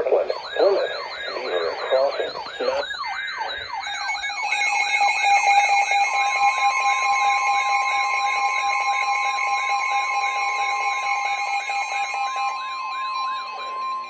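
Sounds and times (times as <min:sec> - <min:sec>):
two-tone attention signal: 0:00.0 - 0:03.8
warbling high tone: 0:00.0 - 0:08.6.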